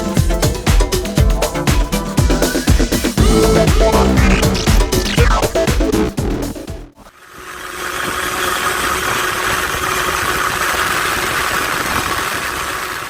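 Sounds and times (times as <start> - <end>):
electronic music: 0.2 - 7.1.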